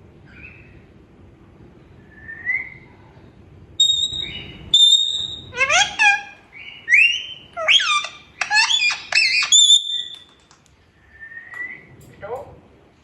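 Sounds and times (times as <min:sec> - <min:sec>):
parrot chattering: 0:03.8 - 0:10.2
parrot high whistle: 0:03.8 - 0:10.3.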